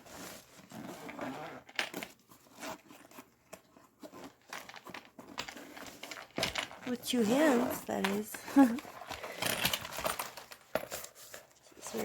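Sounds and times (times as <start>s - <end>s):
zipper being unzipped: 0.0s - 3.2s, 5.5s - 10.2s
fabric case rustling: 0.0s - 12.0s.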